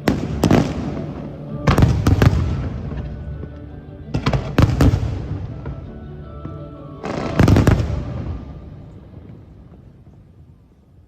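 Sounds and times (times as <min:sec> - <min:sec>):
fireworks bursting with rumbling tail: 0:00.0 - 0:03.5, 0:04.1 - 0:11.0.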